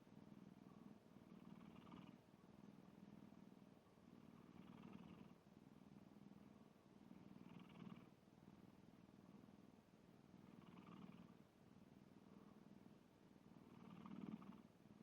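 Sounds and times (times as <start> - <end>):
cat snoring: 1.2 - 2.2, 4.1 - 5.4, 7.1 - 8.2, 10.4 - 11.4, 13.6 - 14.7.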